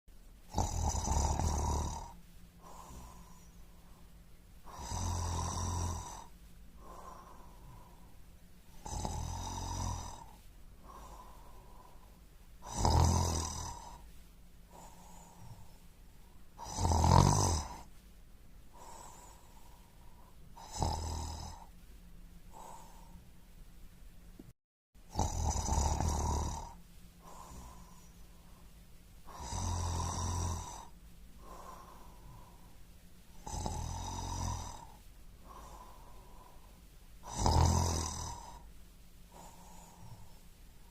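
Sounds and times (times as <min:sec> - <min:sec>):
person snoring: 0:00.5 - 0:04.0, 0:04.6 - 0:14.1, 0:14.7 - 0:15.8, 0:16.6 - 0:17.9, 0:18.7 - 0:21.7, 0:22.5 - 0:23.2, 0:25.1 - 0:28.6, 0:29.2 - 0:32.7, 0:33.3 - 0:38.7, 0:39.3 - 0:40.4
faint breathing: 0:01.9 - 0:13.0, 0:13.6 - 0:16.8, 0:18.6 - 0:23.5, 0:26.4 - 0:37.5, 0:38.2 - 0:40.9.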